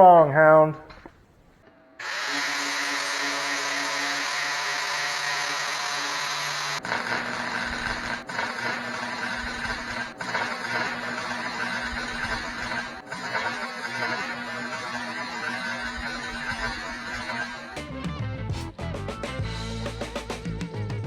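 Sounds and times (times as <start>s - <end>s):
welder hissing and buzzing: 2.0s - 17.9s.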